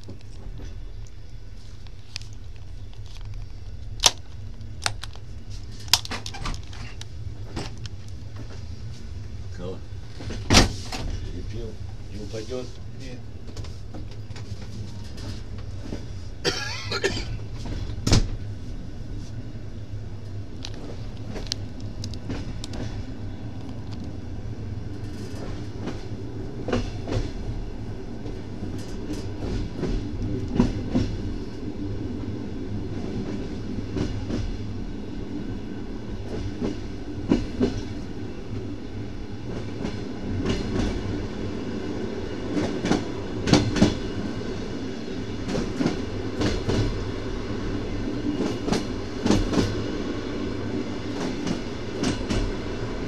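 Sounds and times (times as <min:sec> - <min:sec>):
train low rumble: 0:00.0 - 0:53.0
train wheels clacking: 0:42.5 - 0:44.1, 0:48.4 - 0:49.8.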